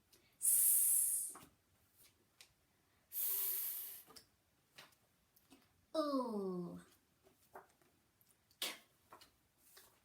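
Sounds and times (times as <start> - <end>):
person hissing sss sound: 0.4 - 1.4, 3.1 - 4.1.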